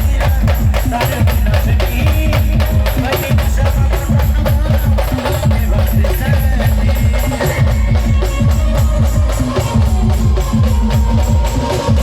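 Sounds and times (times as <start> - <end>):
band playing loud live music: 0.0 - 12.0
fast heavy drumbeats: 0.0 - 12.0.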